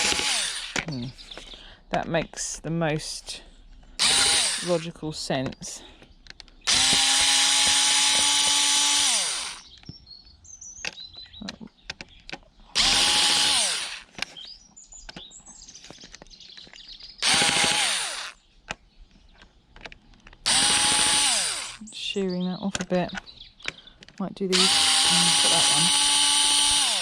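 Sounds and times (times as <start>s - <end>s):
cordless drill whining: 0.0s - 1.6s, 4.0s - 4.9s, 6.2s - 9.8s, 12.7s - 14.4s, 17.2s - 18.4s, 20.4s - 21.9s, 24.5s - 27.0s
handling clicks and knocks: 5.3s - 7.0s, 9.7s - 12.5s, 14.1s - 17.0s, 18.6s - 20.5s, 22.6s - 24.3s.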